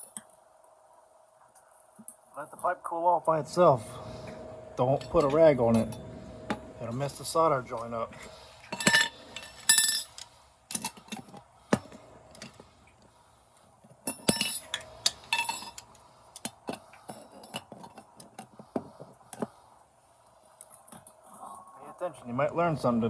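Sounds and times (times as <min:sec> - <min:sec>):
metal tools clinking and knocking: 0:04.9 - 0:06.0, 0:08.7 - 0:11.4, 0:14.0 - 0:18.6.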